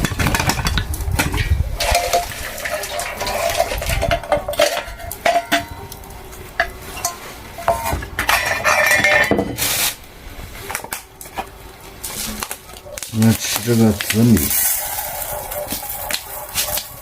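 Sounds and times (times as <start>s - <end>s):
metal cookware clinking: 0.0s - 9.7s.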